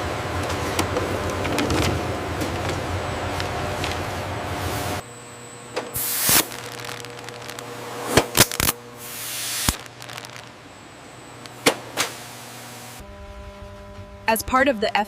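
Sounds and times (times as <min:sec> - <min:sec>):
factory machine noise: 0:00.0 - 0:15.0
air hissing: 0:05.9 - 0:10.4, 0:11.3 - 0:13.0
sharp clicks: 0:06.2 - 0:08.8, 0:09.6 - 0:10.5.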